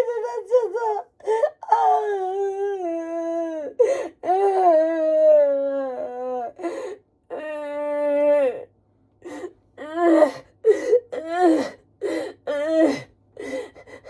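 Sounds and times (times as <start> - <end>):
woman wailing and sobbing: 0.0 - 8.7.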